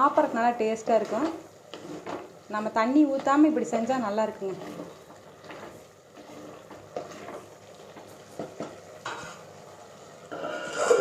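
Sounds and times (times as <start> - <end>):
spoon stirring in metal pan: 0.1 - 9.6, 10.3 - 11.0
spoon scraping pan: 0.8 - 2.4, 4.3 - 9.5, 10.3 - 11.0.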